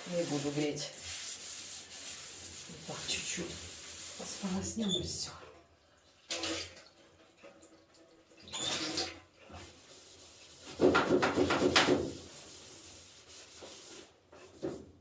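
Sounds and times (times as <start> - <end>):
scrubbing at a washbasin: 0.0 - 5.4, 8.6 - 15.0.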